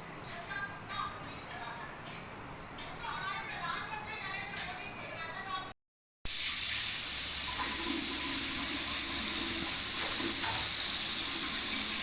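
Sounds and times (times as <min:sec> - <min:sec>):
tap water hissing into sink: 0:06.3 - 0:12.0.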